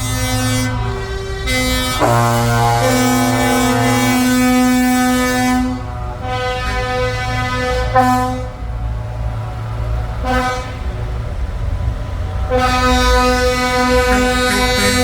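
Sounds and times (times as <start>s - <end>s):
vehicle horn blasts: 0.0s - 8.6s, 10.2s - 10.8s, 12.5s - 15.0s
low engine rumble: 0.0s - 15.0s.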